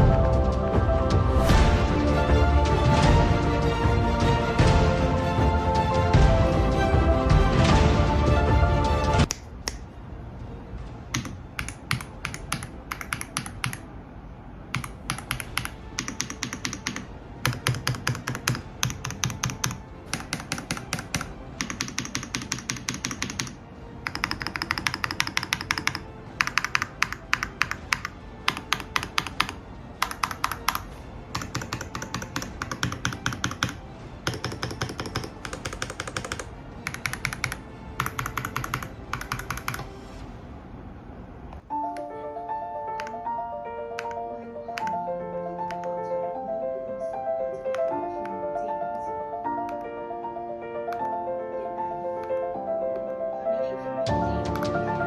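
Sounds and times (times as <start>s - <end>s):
mechanical keyboard key clacks: 11.1s - 13.8s, 14.8s - 39.9s.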